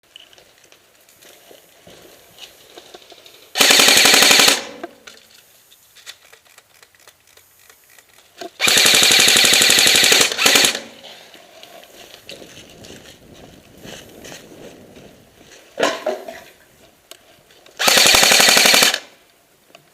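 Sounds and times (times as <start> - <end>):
airsoft gun firing bursts: 3.6 - 4.9, 8.6 - 11.0, 17.8 - 19.2.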